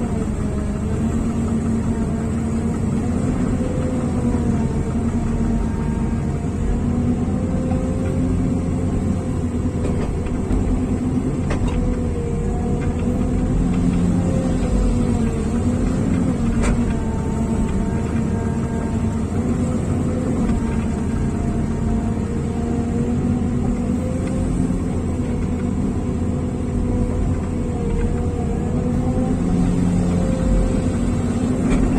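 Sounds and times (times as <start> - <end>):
heavy diesel engine running: 0.0 - 31.9.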